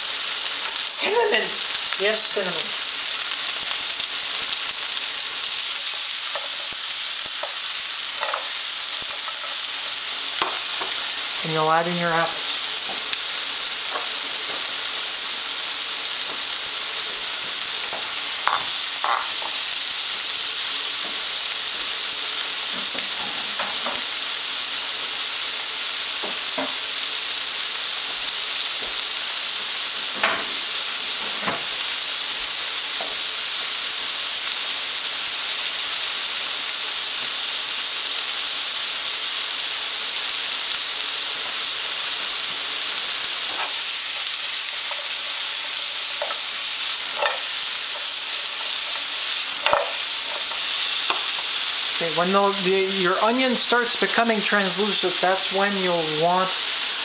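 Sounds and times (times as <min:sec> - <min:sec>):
food sizzling in a pan: 0:00.0 - 0:57.0
utensil scraping a pan: 0:43.5 - 0:51.5.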